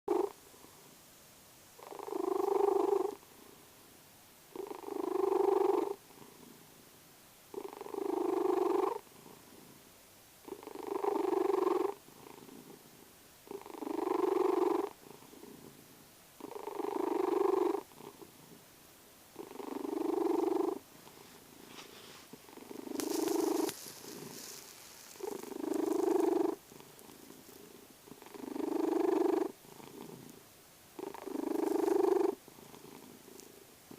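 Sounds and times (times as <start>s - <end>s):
cat snoring: 0.1s - 0.4s, 1.8s - 3.5s, 4.5s - 6.6s, 7.5s - 9.8s, 10.4s - 18.6s, 19.4s - 21.2s, 22.3s - 30.4s, 31.0s - 33.9s
brief rustle: 21.2s - 26.0s.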